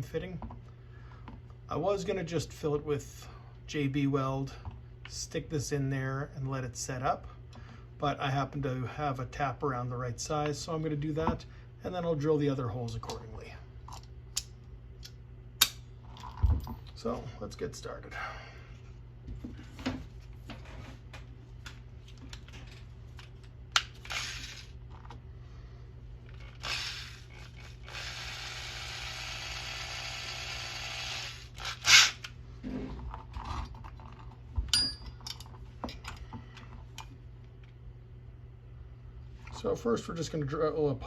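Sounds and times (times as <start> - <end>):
steady whirring: 23.8 - 24.7, 26.3 - 32.3.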